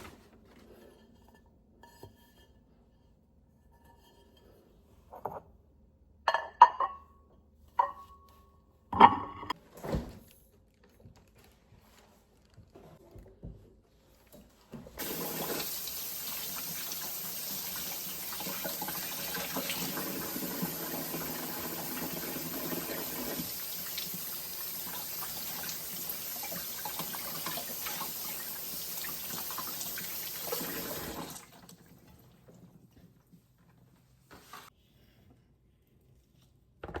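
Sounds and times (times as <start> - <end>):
water running from a tap into a sink: 15.0 - 32.6.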